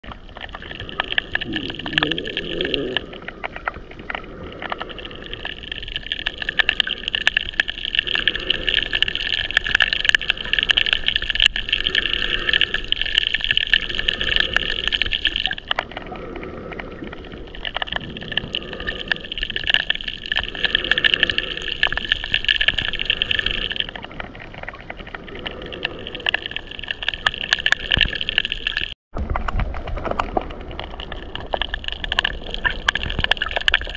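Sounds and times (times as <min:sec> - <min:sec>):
sharp clicks and crackles: 0:00.0 - 0:33.9
underwater hiss: 0:00.6 - 0:24.0.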